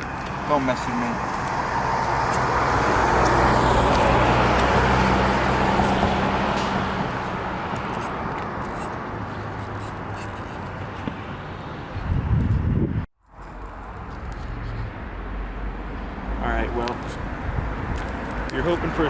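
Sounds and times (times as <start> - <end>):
vehicle passing by: 0.0 - 10.6.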